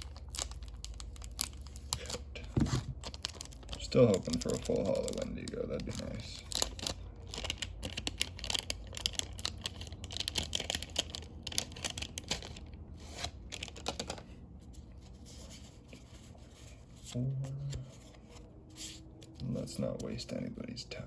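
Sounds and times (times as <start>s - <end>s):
plastic blister pack tearing: 0.0s - 14.2s.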